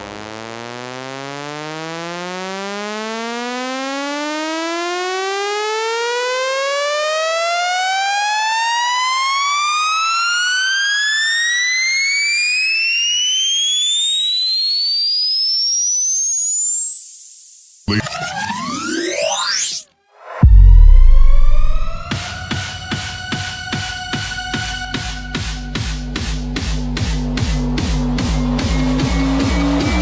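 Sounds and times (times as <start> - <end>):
rising electronic test tone: 12.4 - 22.2.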